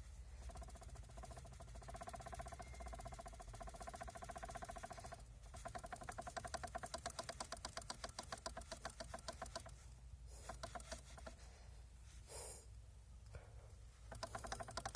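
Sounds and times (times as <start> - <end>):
power steering unit knocking: 14.1 - 14.9.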